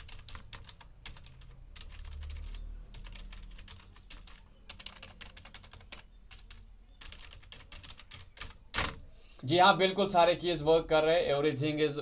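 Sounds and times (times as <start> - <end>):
keyboard typing clicks: 0.0 - 9.0.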